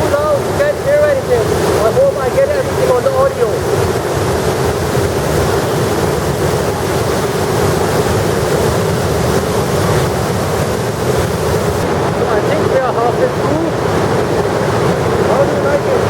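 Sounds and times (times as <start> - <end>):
waterfall roaring: 0.0 - 16.0.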